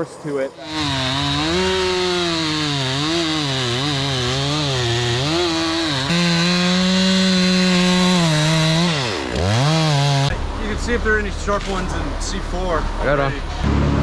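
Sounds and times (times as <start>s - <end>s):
stump grinder engine running hard: 0.6s - 10.3s.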